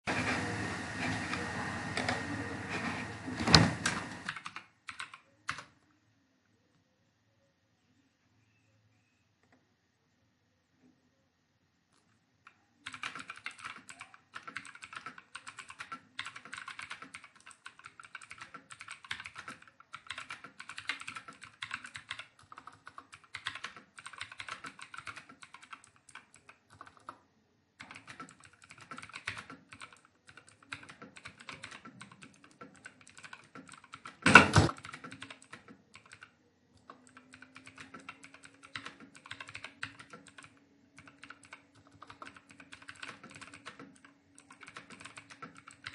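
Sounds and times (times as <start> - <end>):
fast typing on computer keyboard: 3.9 - 5.8, 12.0 - 27.2, 27.8 - 45.9.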